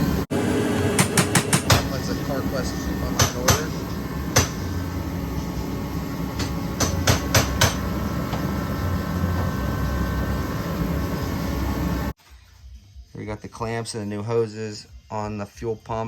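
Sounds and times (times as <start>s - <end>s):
low hum: 0.0s - 12.2s.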